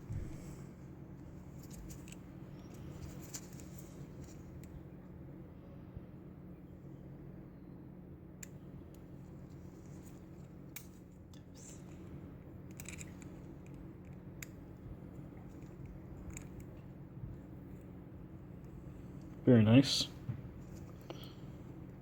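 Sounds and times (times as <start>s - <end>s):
steady low hum: 0.0s - 22.0s
metal clicks and scrapes: 12.7s - 14.2s.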